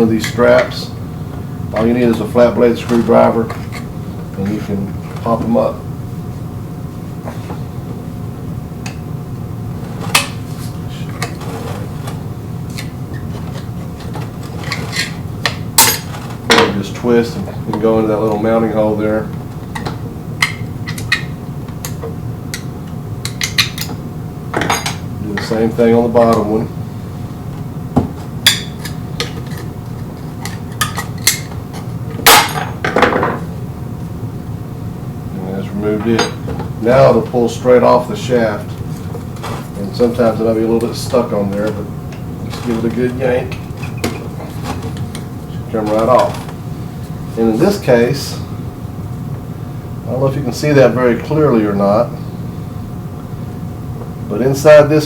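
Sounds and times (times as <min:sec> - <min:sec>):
low background hum: 0:00.0 - 0:55.0.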